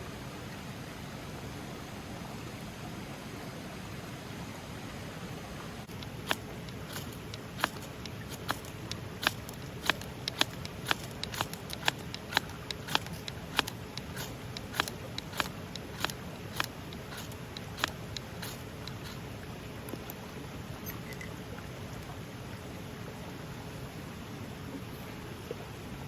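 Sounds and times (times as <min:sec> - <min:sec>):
steady hiss: 0:05.7 - 0:20.3
sharp clicks: 0:05.9 - 0:19.3.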